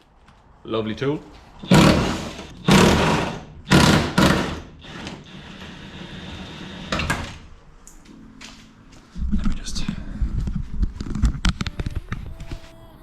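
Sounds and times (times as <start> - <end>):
power tool bursts: 1.6 - 7.3.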